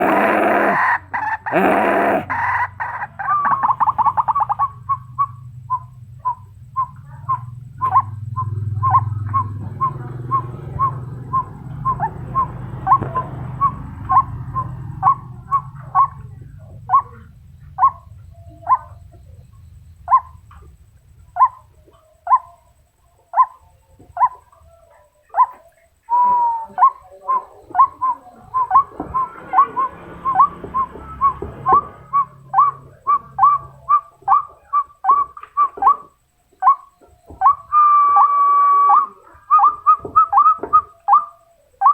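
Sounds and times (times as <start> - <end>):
waterhen calling: 0.0 - 4.4.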